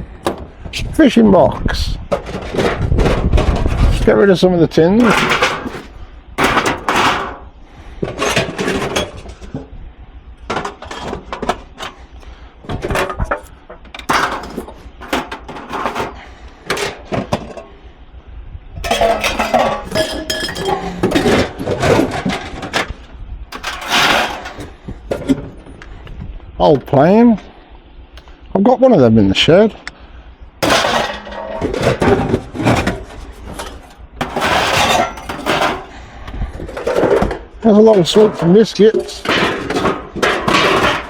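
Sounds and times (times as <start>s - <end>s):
metal tins clattering: 5.0s - 7.4s, 12.9s - 17.6s, 18.8s - 22.9s, 23.6s - 25.4s, 30.6s - 36.0s, 36.7s - 41.0s.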